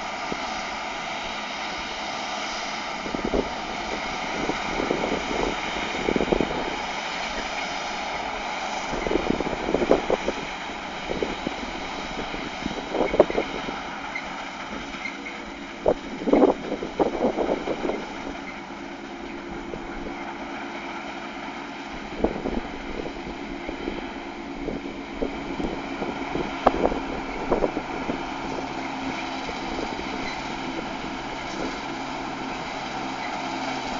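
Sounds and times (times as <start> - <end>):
combine harvester running: 0.0 - 33.9
wind on microphone: 3.0 - 7.5, 8.3 - 13.8, 15.8 - 18.4, 22.0 - 31.9.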